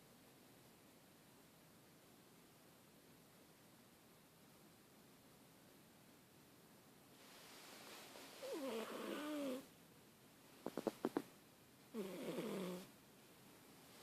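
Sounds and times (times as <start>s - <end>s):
cat snoring: 8.4s - 9.7s, 11.9s - 12.9s.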